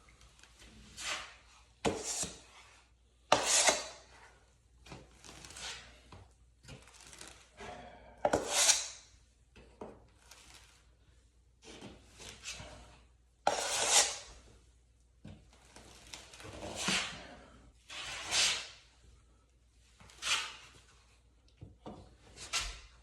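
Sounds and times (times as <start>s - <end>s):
taping knife scraping compound: 0.4s - 4.4s, 5.1s - 6.1s, 8.2s - 9.1s, 12.3s - 14.5s, 15.5s - 19.0s, 20.0s - 21.1s.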